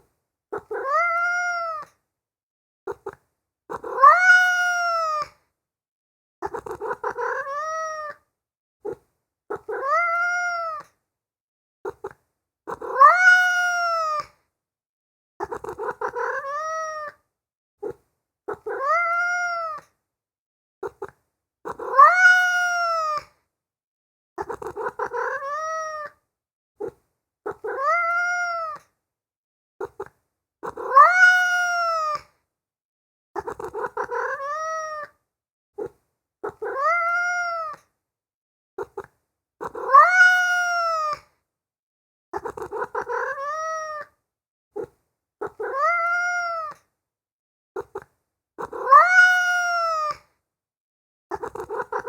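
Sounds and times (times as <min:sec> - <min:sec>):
cat meowing: 0:00.6 - 0:02.0, 0:03.7 - 0:05.4, 0:06.4 - 0:08.2, 0:09.5 - 0:11.0, 0:11.9 - 0:14.3, 0:15.4 - 0:17.2, 0:17.8 - 0:19.9, 0:21.7 - 0:23.3, 0:24.4 - 0:26.2, 0:27.5 - 0:28.9, 0:29.8 - 0:32.3, 0:33.4 - 0:35.2, 0:35.8 - 0:37.9, 0:38.8 - 0:41.2, 0:42.4 - 0:44.2, 0:44.8 - 0:46.8, 0:47.8 - 0:50.2, 0:51.3 - 0:52.0.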